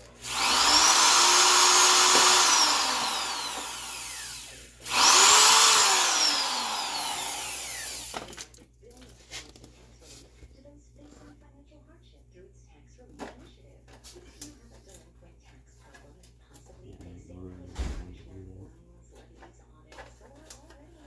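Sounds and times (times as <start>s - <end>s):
power tool motor whining: 0.0s - 8.3s.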